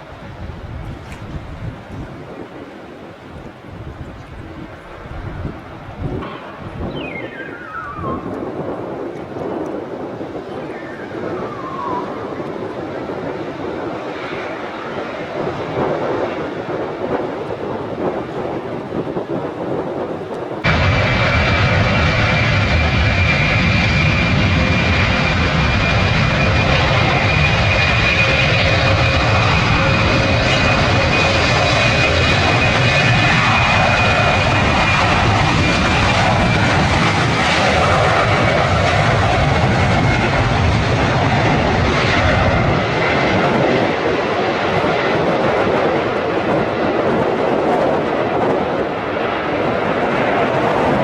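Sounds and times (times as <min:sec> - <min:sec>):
airliner engines running: 0:00.0 - 0:51.0.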